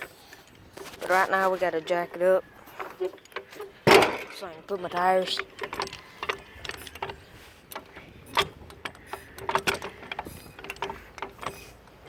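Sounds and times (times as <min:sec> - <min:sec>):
jack squeaking: 0:00.0 - 0:12.0
jack clicking and knocking: 0:02.7 - 0:12.0.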